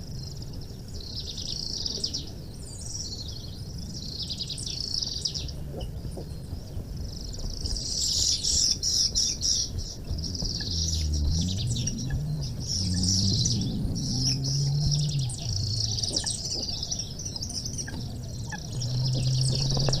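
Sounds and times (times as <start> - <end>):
small birds chirping: 0.0 - 20.0
low hum: 9.1 - 20.0.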